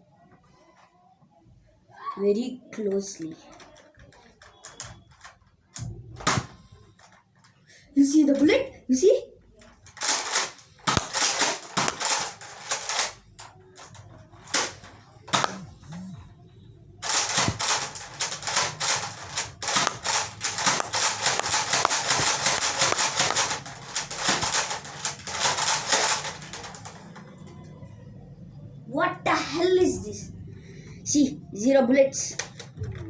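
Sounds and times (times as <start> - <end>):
foam-dart blaster clicking shots: 6.2 - 6.6, 10.0 - 13.2, 14.5 - 16.1, 17.0 - 27.0.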